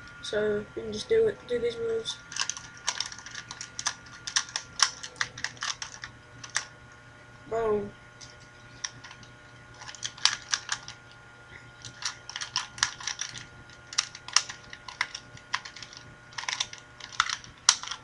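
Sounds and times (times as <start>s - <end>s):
plastic puzzle cube clicking: 2.3s - 6.7s, 9.8s - 10.9s, 11.8s - 18.0s.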